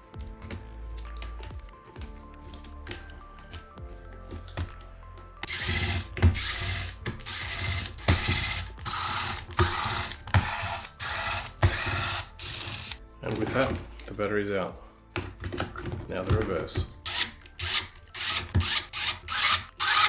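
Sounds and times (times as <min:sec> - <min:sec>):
electric screwdriver whirring: 0:05.4 - 0:13.0, 0:17.0 - 0:20.0.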